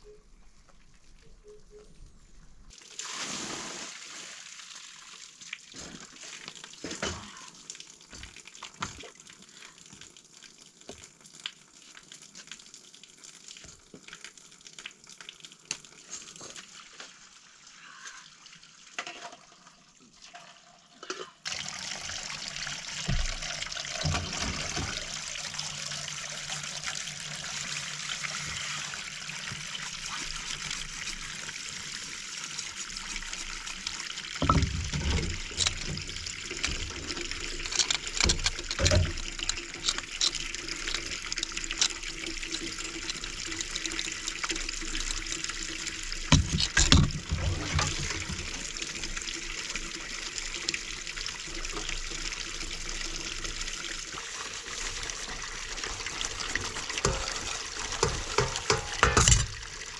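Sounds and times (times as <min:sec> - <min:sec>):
running water rushing: 0:21.5 - 0:59.9.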